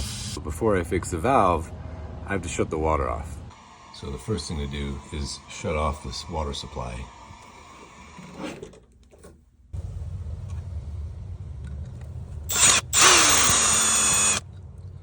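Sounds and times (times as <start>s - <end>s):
cordless drill whirring: 12.5s - 14.4s.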